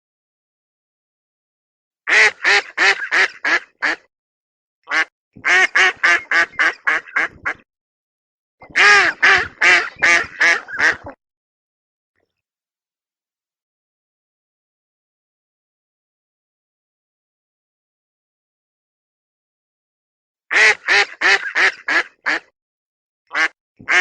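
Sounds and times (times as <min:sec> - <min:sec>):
duck quacking: 0:02.1 - 0:04.1, 0:04.9 - 0:07.6, 0:08.6 - 0:11.2, 0:20.5 - 0:22.5, 0:23.3 - 0:24.0.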